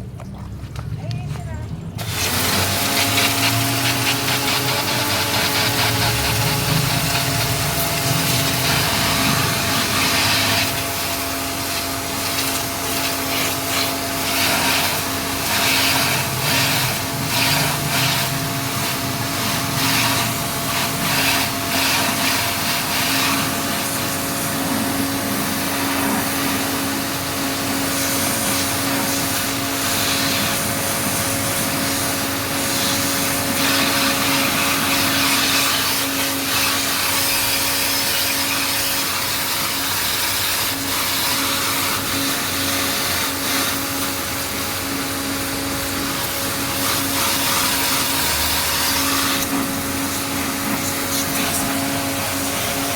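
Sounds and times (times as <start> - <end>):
pressure washer motor hum: 0.0 - 52.9
water spray hissing: 2.0 - 52.9.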